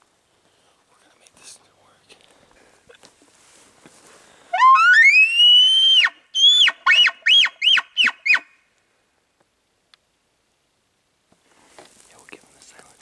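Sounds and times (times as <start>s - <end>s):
elk bugling: 4.5s - 8.6s
elk call whistle: 4.5s - 8.6s.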